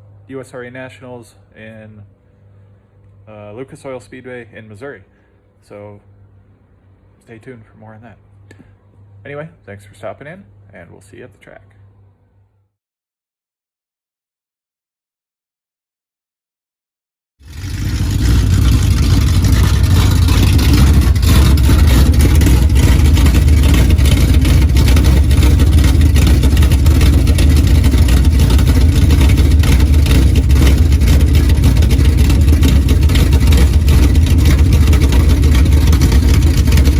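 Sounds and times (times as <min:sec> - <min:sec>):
race car engine running loud: 0:17.4 - 0:36.9.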